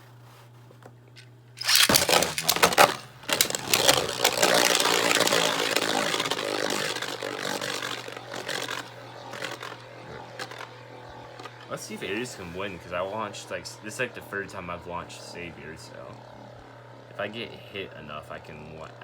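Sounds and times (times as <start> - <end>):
spinning tops whirring and scraping: 1.2 - 16.1
spinning tops clattering: 1.6 - 9.8.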